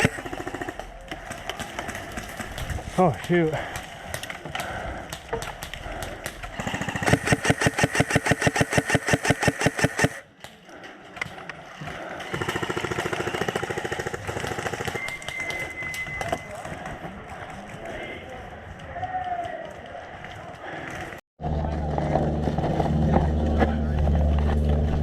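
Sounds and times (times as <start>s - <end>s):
airsoft gun firing bursts: 0.0s - 0.9s, 6.6s - 10.2s, 12.2s - 15.4s.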